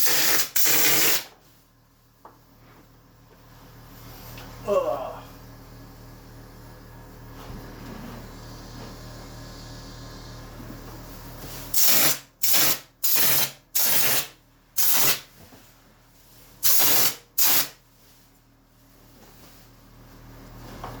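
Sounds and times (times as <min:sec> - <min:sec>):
texture spray hissing bursts: 0:00.0 - 0:01.3, 0:11.7 - 0:15.2, 0:16.6 - 0:17.8.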